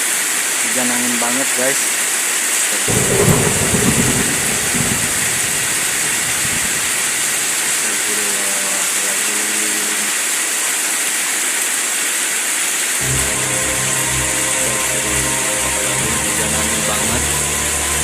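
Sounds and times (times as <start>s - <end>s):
heavy rain hissing: 0.0s - 18.0s
wind buffeting microphone: 2.9s - 7.8s.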